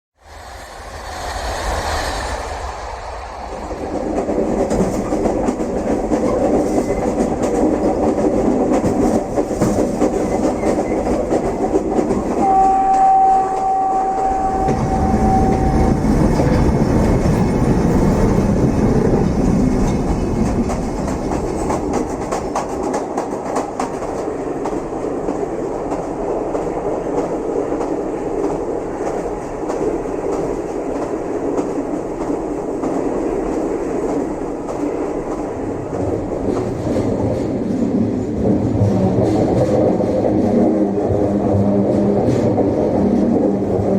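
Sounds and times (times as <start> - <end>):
train rumble: 0.2 - 43.9
train wheels clacking: 0.3 - 43.9
train horn blast: 12.4 - 16.8.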